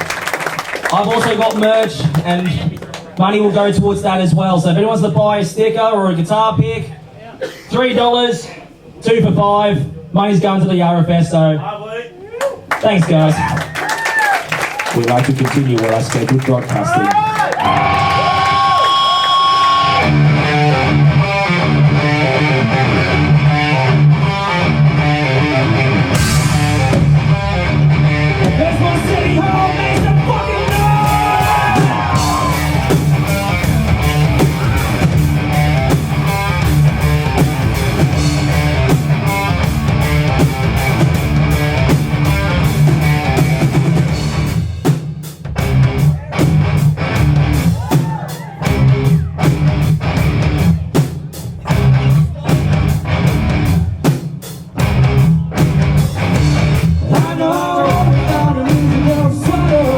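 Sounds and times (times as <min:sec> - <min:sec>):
bass: 0:14.6 - 0:59.9
distorted electric guitar: 0:19.4 - 0:44.8, 0:45.5 - 0:47.9, 0:48.7 - 0:50.9, 0:51.7 - 0:54.0, 0:54.8 - 0:59.9
drum kit: 0:19.6 - 0:59.9.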